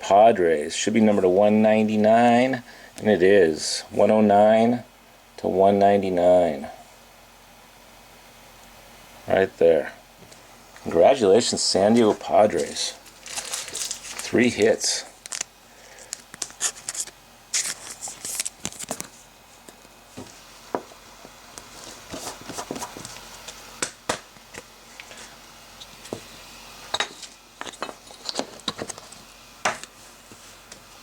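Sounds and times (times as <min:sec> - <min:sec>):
trading cards being handled: 0:11.8 - 0:20.3.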